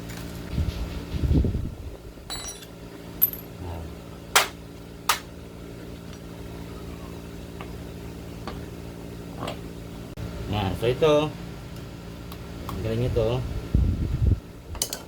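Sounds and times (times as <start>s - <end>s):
steady low hum: 0.0s - 15.0s
socket wrench clinking on metal: 2.3s - 3.5s.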